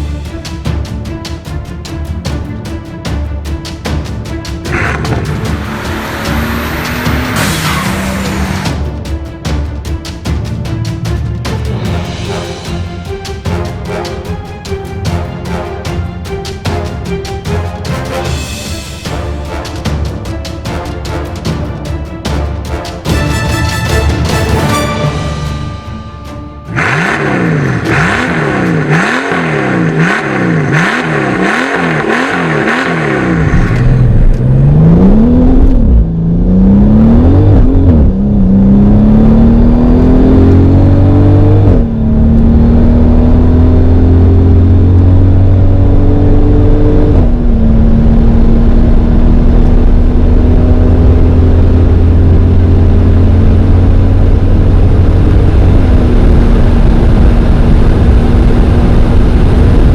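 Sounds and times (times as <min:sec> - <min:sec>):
car engine revving: 0:03.3 - 0:09.4, 0:24.2 - 0:59.9
car accelerating through gears: 0:04.7 - 0:08.7, 0:26.7 - 0:59.9.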